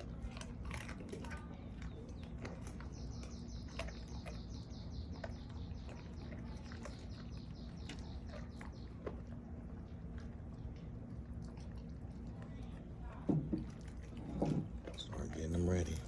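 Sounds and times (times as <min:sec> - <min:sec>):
dog crunching bones: 0:00.0 - 0:12.4.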